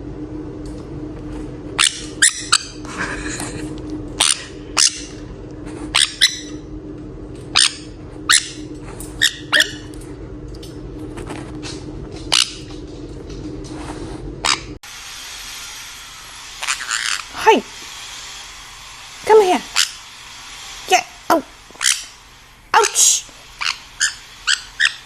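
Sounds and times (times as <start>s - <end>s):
steady low hum: 0.0s - 25.0s
parrot squawking: 1.8s - 2.8s, 4.2s - 5.2s, 6.0s - 6.6s, 7.6s - 9.9s, 12.3s - 12.7s, 14.4s - 14.7s, 16.6s - 17.8s, 19.6s - 20.0s, 21.0s - 22.2s, 22.8s - 25.0s.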